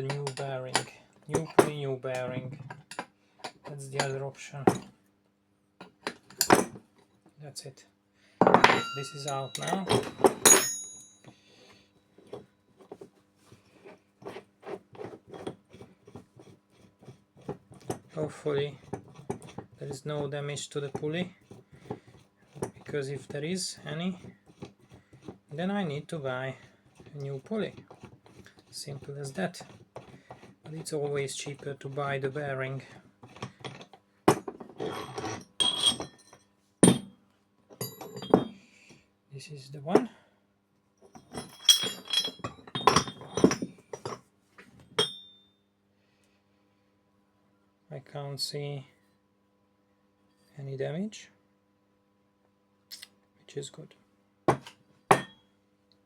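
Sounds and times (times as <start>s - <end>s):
metal tools clanking on workbench: 0.0s - 4.9s, 5.8s - 6.8s, 8.4s - 11.3s, 33.3s - 37.1s, 37.8s - 38.6s, 41.1s - 44.2s, 44.9s - 45.3s, 54.5s - 55.4s
metallic ringing and clinking: 8.5s - 11.3s, 35.2s - 37.0s, 37.8s - 38.5s, 41.2s - 44.2s, 45.0s - 45.5s
metal parts clicking and scraping: 8.6s - 10.8s, 41.1s - 44.2s.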